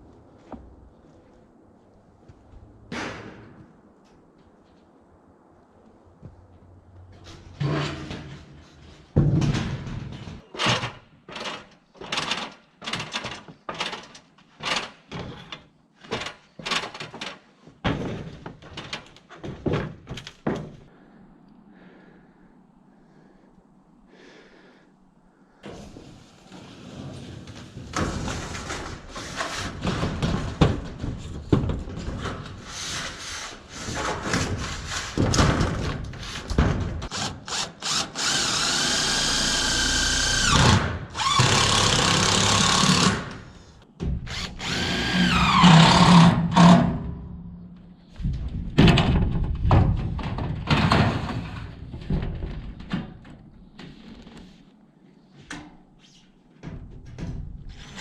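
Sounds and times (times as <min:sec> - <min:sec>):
steel sheet knocking and rattling: 0:33.7 - 0:37.1, 0:48.2 - 0:53.4
cordless drill on sheet steel: 0:37.1 - 0:43.3, 0:44.3 - 0:46.7.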